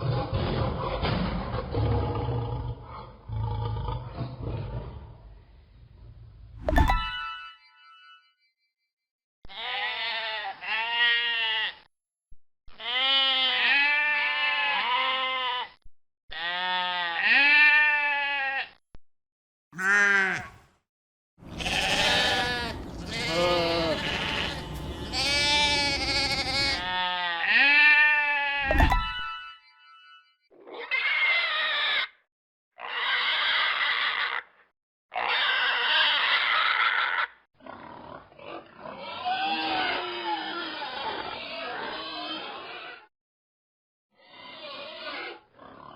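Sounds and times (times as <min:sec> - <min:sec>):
wavering animal calls: 0:21.4 - 0:27.0.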